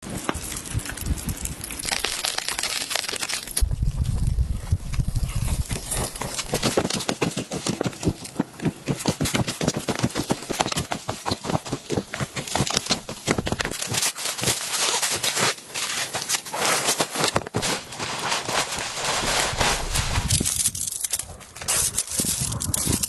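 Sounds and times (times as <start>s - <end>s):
tent fabric rattling in wind: 0.0s - 23.0s
gusty wind rumble: 3.6s - 6.6s, 19.2s - 23.0s.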